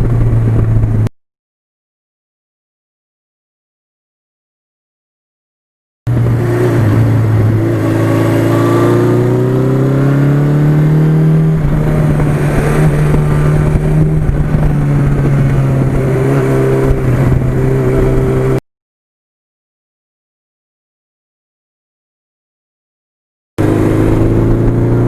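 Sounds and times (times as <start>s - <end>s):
motorcycle engine accelerating: 0.0s - 1.1s, 6.1s - 18.6s, 23.6s - 25.0s.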